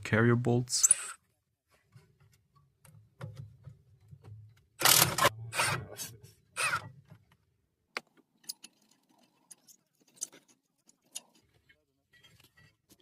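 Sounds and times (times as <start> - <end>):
power tool bursts on bolts: 4.8 - 5.8, 6.6 - 6.9.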